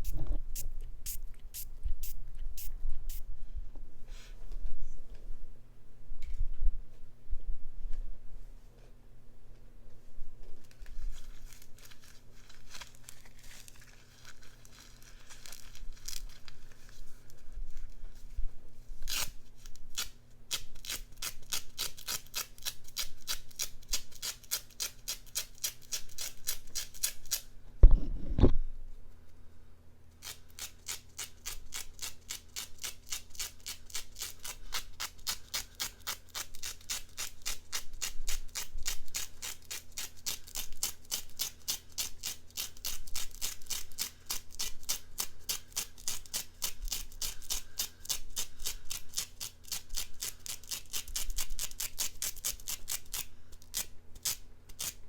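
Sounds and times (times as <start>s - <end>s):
thump: 27.8s - 28.6s.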